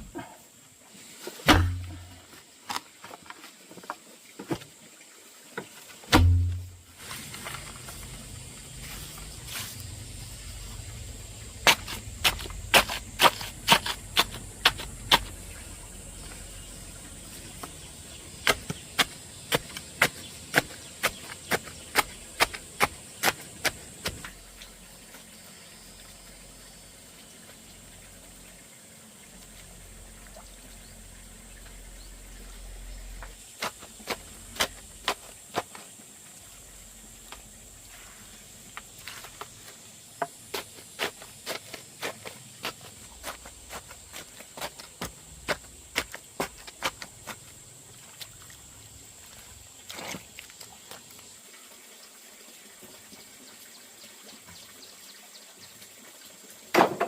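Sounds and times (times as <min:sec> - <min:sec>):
sharp knocks: 0:01.5 - 0:02.0, 0:06.1 - 0:06.8
steady high hiss: 0:05.9 - 0:18.2.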